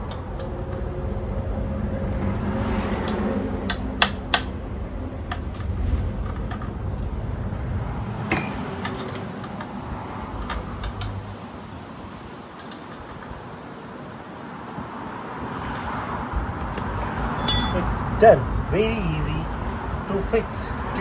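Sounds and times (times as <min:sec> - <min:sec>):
low rumble: 0:00.0 - 0:08.8.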